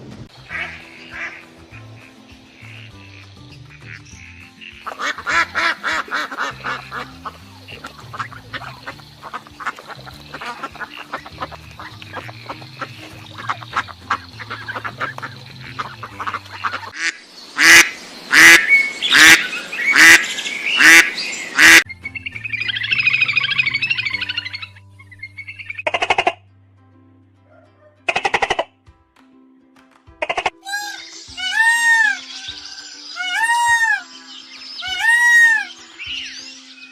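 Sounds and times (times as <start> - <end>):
background music: 0.0 - 36.9
ducks quacking: 0.4 - 21.9, 25.6 - 26.4, 28.1 - 28.7, 30.2 - 34.1, 34.8 - 35.8.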